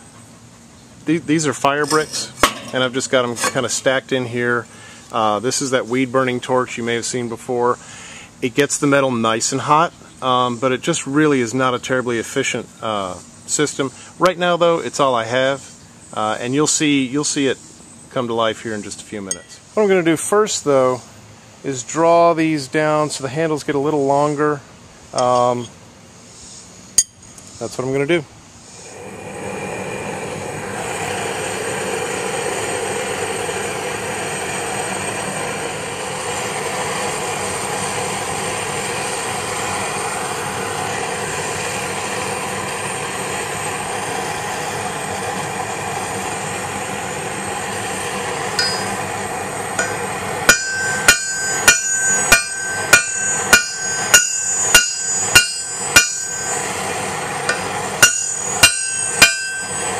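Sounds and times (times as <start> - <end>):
hammer ringing on anvil: 19.3 - 19.6, 48.6 - 49.0, 49.8 - 56.7, 57.5 - 59.9
steady rushing noise: 28.9 - 59.9.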